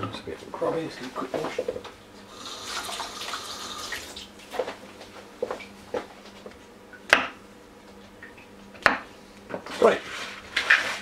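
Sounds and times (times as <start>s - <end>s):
kitchen tap running: 2.3s - 4.4s.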